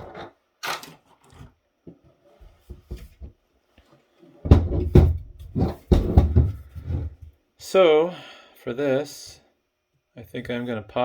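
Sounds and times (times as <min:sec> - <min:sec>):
loud knocks and thumps: 0:04.4 - 0:07.2.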